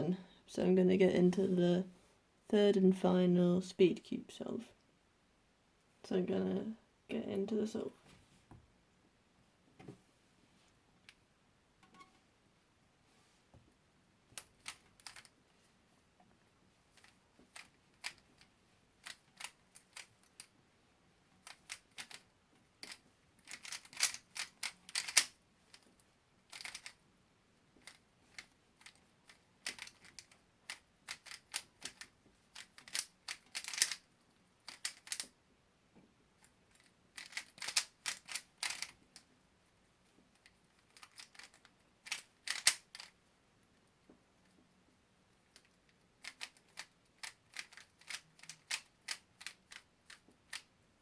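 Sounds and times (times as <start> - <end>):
plastic cube layers clicking: 14.4 - 15.4, 16.9 - 20.5, 21.4 - 27.0, 27.8 - 35.4, 36.7 - 39.3, 40.4 - 43.2, 45.5 - 50.7.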